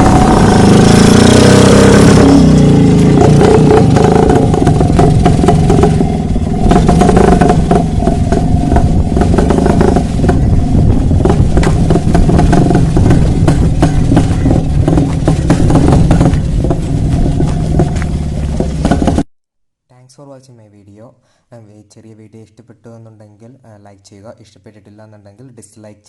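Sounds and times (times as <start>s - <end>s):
two-stroke motorcycle engine: 0.0s - 19.3s.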